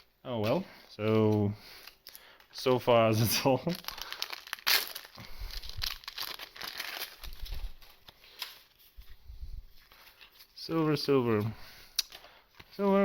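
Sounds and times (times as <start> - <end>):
plastic wrapper crinkling: 1.2 - 9.2.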